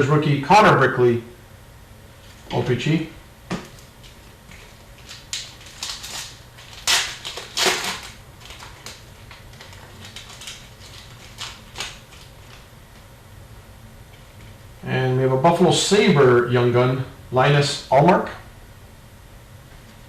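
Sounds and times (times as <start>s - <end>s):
trading cards clicking and rustling: 3.5s - 13.1s.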